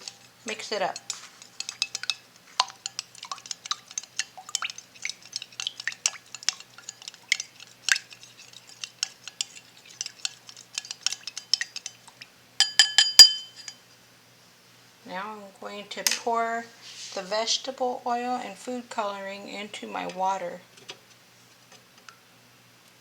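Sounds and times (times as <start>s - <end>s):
spoon clinking in a glass: 0.9s - 7.2s, 12.6s - 13.8s
spoon tapping a glass: 1.0s - 4.7s, 12.6s - 13.8s.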